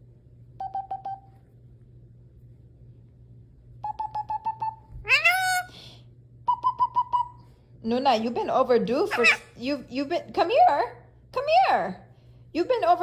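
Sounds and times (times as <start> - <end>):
bird squeaky beeping chirps: 9.1 - 9.4.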